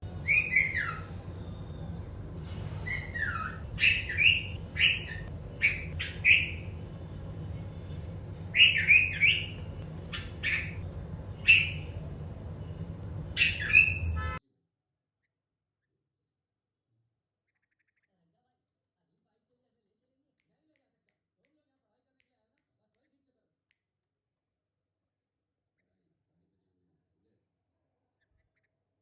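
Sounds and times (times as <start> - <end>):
steady low hum: 0.0 - 14.4
bird chirping calls: 0.1 - 14.4.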